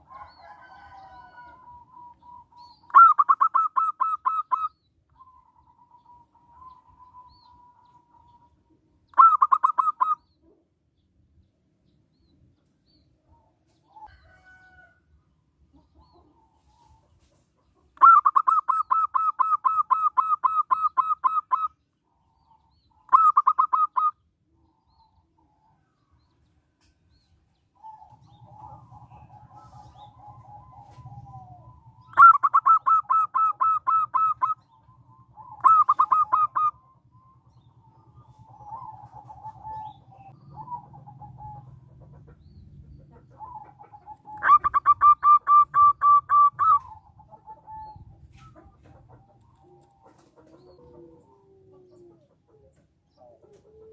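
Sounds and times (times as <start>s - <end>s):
dove calling in pulsed notes: 0.0s - 11.2s, 15.7s - 26.4s, 27.1s - 53.9s
soft cooing trills: 27.8s - 41.8s.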